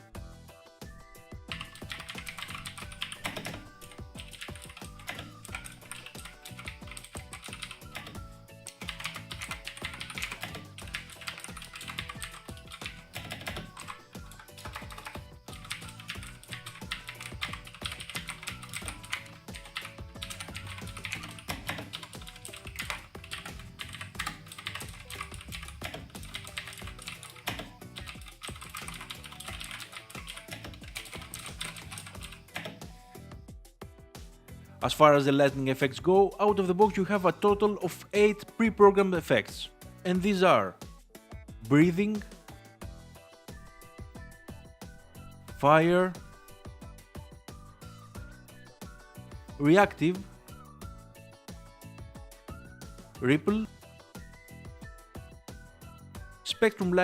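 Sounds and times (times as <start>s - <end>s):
typing on clicky mechanical keyboard: 1.5s - 32.8s.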